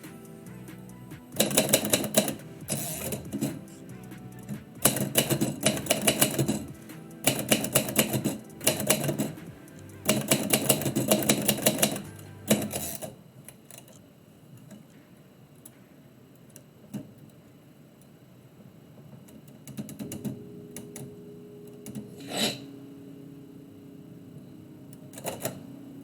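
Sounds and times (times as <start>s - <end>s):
typewriter keys clacking: 1.4s - 3.7s, 4.4s - 13.1s.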